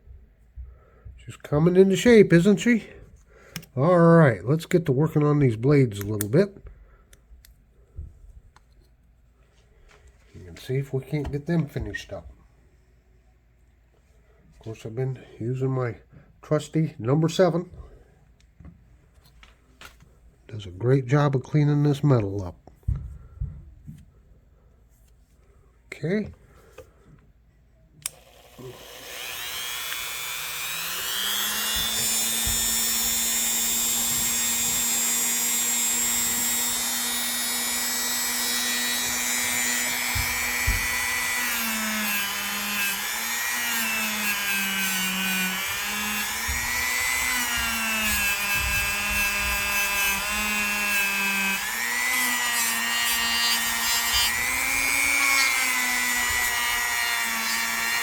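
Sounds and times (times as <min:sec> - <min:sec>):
power tool motor running: 0:28.0 - 0:58.0.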